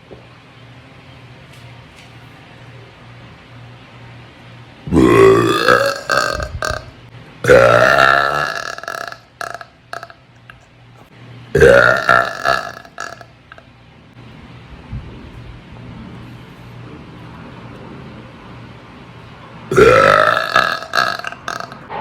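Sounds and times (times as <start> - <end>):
long loud burps: 4.9 - 10.2, 11.6 - 13.6, 19.7 - 21.9.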